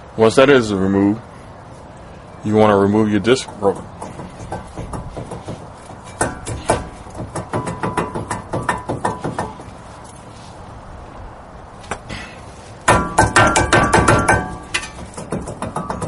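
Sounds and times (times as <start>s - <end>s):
hammer knocking on brake disc: 3.4s - 9.7s, 12.9s - 16.0s.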